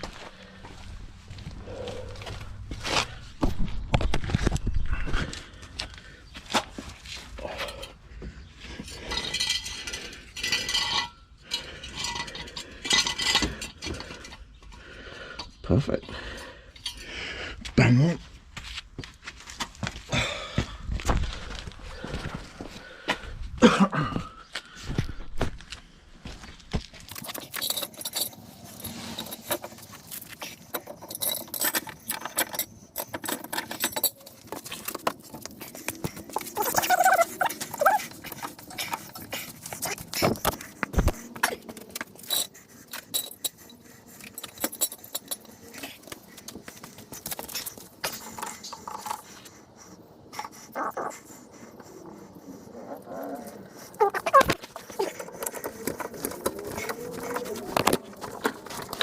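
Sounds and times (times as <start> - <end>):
metal tools clinking and scraping: 8.6 - 14.8, 27.0 - 49.6, 52.8 - 59.0.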